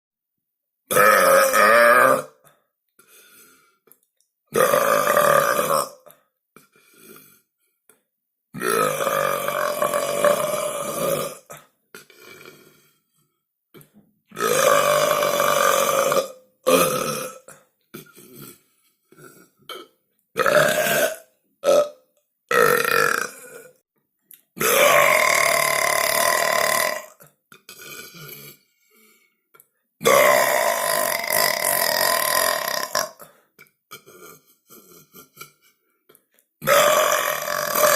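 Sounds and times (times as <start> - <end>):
person belching: 0.9 - 2.5, 4.5 - 6.2, 8.5 - 12.7, 13.8 - 23.8, 24.6 - 28.7, 30.0 - 35.6, 36.6 - 37.9.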